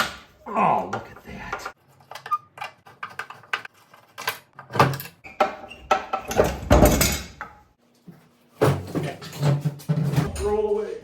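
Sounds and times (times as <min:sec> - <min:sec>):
metal toolbox knocking and clattering: 0:04.7 - 0:07.5, 0:08.6 - 0:10.6.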